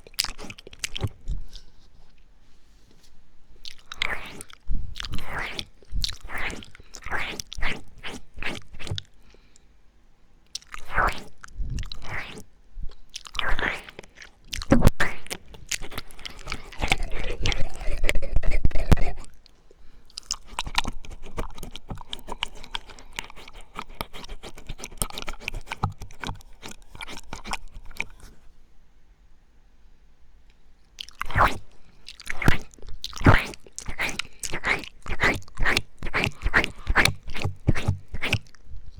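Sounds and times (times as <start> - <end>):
mouth smacking and clicking: 10.5 - 12.5, 13.1 - 28.5, 31.0 - 38.7.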